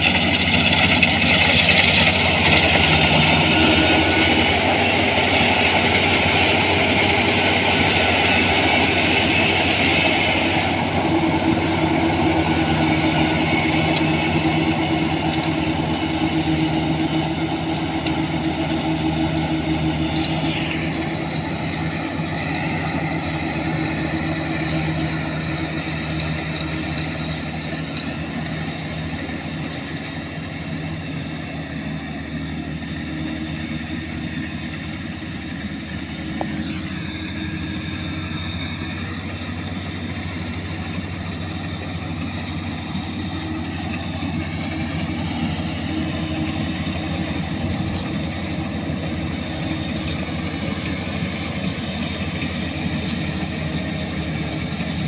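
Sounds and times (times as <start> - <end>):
diesel engine droning: 0.0 - 55.0.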